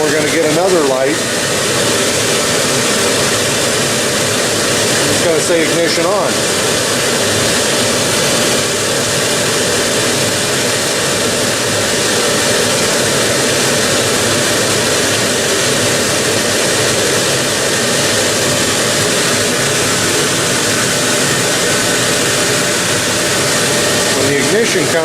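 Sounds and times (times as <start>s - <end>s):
boiler fan roaring: 0.0s - 25.0s.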